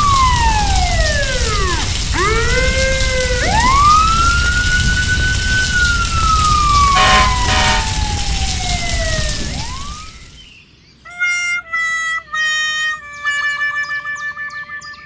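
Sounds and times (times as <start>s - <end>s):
emergency siren wailing: 0.0s - 10.4s, 11.1s - 15.0s
rumbling hiss: 0.0s - 11.0s
short horn blasts: 6.9s - 8.0s.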